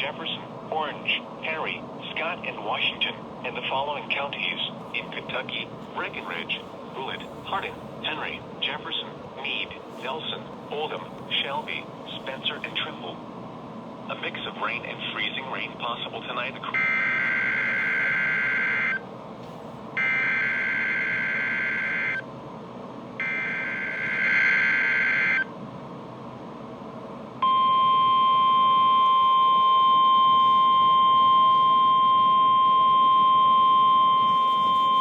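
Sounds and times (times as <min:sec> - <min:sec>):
steady alarm tone: 0:16.7 - 0:19.0, 0:20.0 - 0:22.2, 0:23.2 - 0:25.5, 0:27.4 - 0:35.0.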